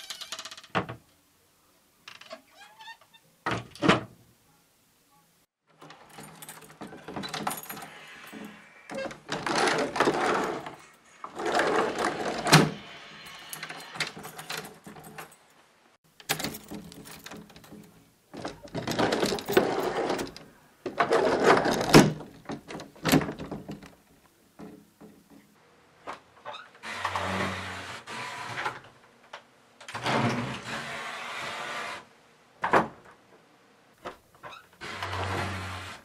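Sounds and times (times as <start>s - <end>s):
door scraping and creaking: 5.8s - 15.3s, 16.4s - 24.0s, 34.4s - 36.0s.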